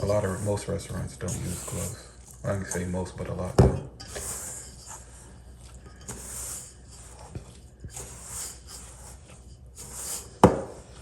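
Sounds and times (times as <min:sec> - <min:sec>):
hands squishing wet dough: 0:00.0 - 0:03.6, 0:04.5 - 0:11.0.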